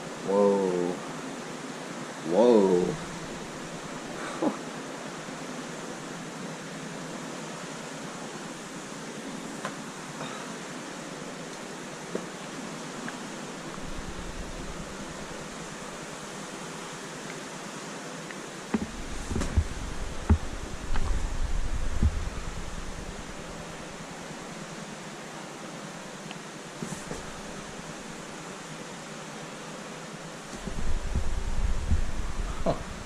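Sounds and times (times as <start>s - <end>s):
running water in a cave: 0.0s - 33.0s
scrapes and knocks on rock: 18.7s - 21.3s.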